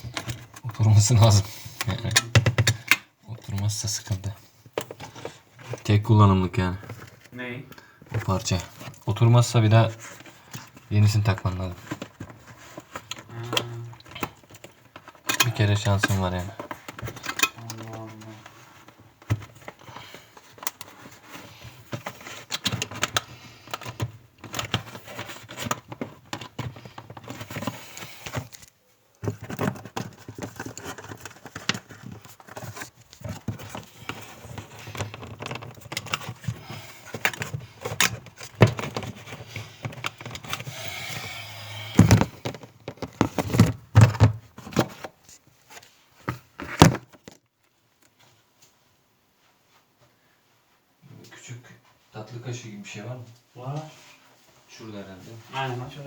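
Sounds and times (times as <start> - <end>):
clicks and rattles of parts: 0.0 - 4.0, 10.1 - 41.3, 41.9 - 48.2.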